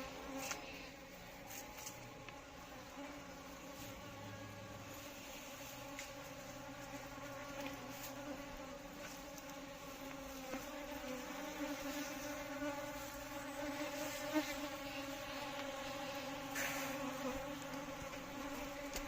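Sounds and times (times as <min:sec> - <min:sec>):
bees buzzing: 0:00.0 - 0:19.0.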